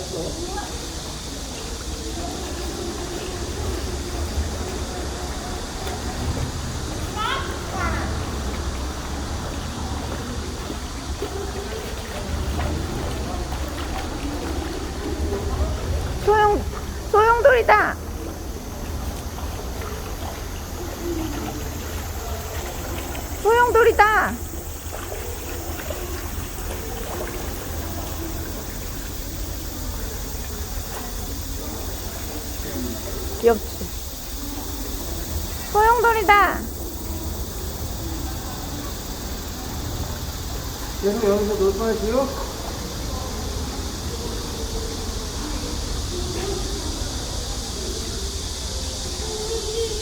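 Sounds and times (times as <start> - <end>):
faint voices: 0.0 - 50.0
shallow water trickling: 0.1 - 46.0.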